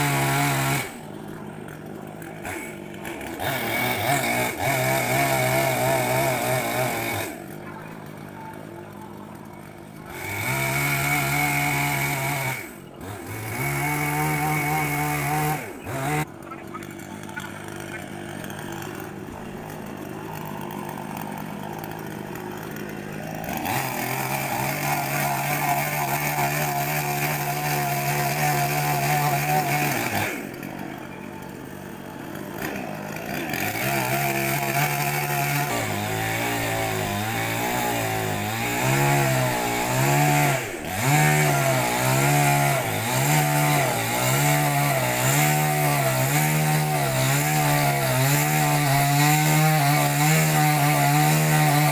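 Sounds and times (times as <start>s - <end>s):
chainsaw cutting wood: 0.0s - 51.9s.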